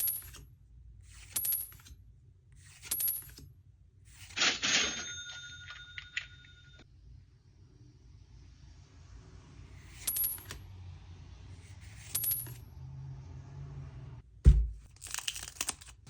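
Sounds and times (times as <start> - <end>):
bell-like ringing: 4.7 - 6.9.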